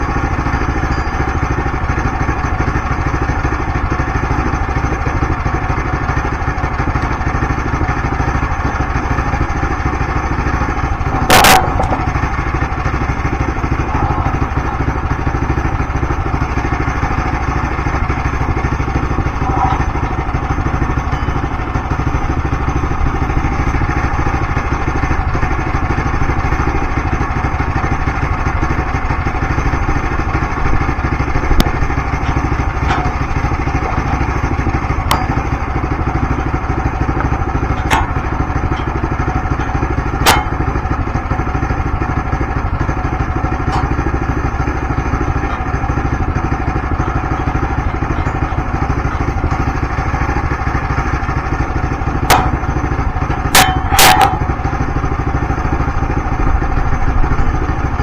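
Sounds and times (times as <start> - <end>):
engine running: 0.0 - 58.0
sharp knocks: 10.5 - 16.2, 31.4 - 36.6, 37.2 - 41.6, 52.2 - 54.8.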